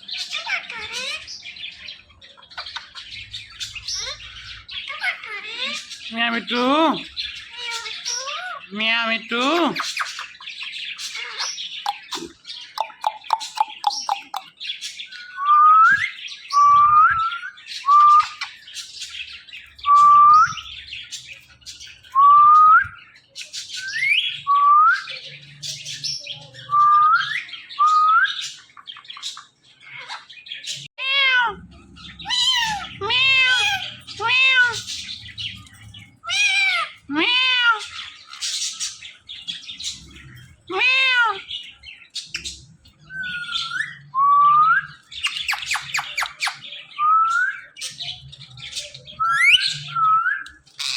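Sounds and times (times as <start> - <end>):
parakeet chirps and whistles: 11.2 - 14.6, 15.2 - 18.6, 23.8 - 25.2, 48.8 - 50.9
parakeet meow-like calls: 31.0 - 35.2, 36.2 - 38.5, 40.7 - 41.7.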